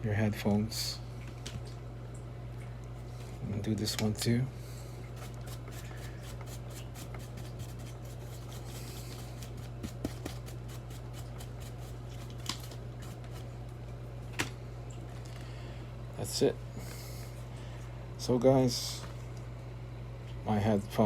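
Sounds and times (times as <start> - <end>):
steady low hum: 0.0 - 21.0
brush sweeping ear cup: 5.2 - 12.4.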